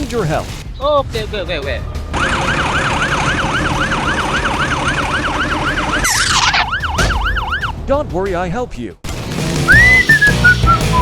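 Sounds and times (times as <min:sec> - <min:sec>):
emergency siren yelping: 0:02.2 - 0:07.8.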